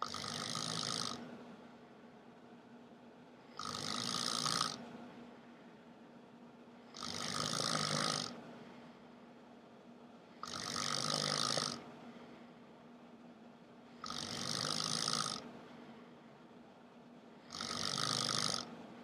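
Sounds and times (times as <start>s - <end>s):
man snoring: 0.0s - 1.2s, 3.5s - 4.8s, 6.9s - 8.4s, 10.4s - 11.9s, 14.0s - 15.5s, 17.4s - 18.7s.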